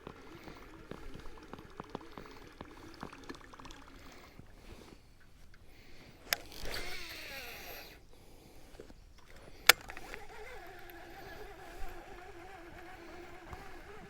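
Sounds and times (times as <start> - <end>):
reel whining while cranked: 0.0 - 4.5, 5.8 - 14.0
reel spool whirring: 0.0 - 14.0
fishing reel click: 6.2 - 8.0, 9.2 - 14.0.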